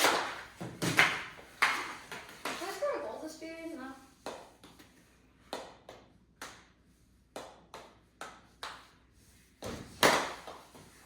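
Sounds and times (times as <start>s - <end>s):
hockey sticks tapping and clacking: 0.0s - 2.9s, 4.2s - 6.7s, 7.3s - 9.0s, 9.6s - 11.0s.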